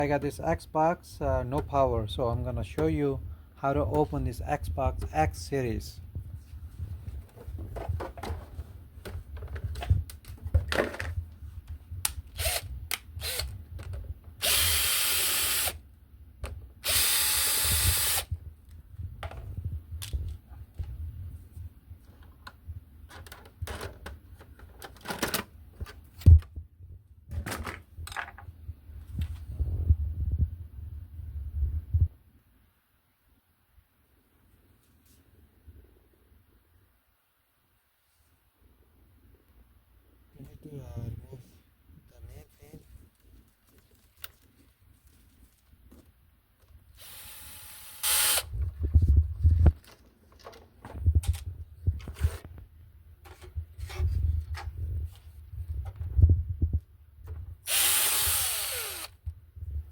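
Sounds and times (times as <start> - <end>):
small power tool running: 14.4 - 15.8, 16.9 - 18.3, 47.0 - 48.5, 57.7 - 59.2.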